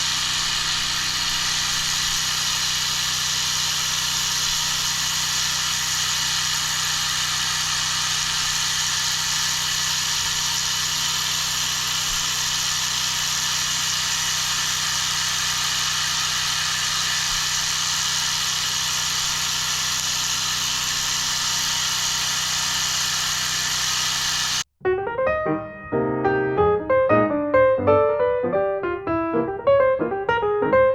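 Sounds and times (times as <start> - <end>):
machine humming: 0.0 - 24.6
pressure washer water jet hissing: 0.0 - 24.6.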